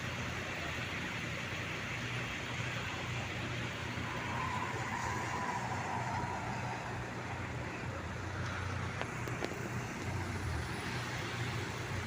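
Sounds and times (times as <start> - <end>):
road and traffic noise: 0.0 - 12.0
vehicle engine running: 0.0 - 12.0.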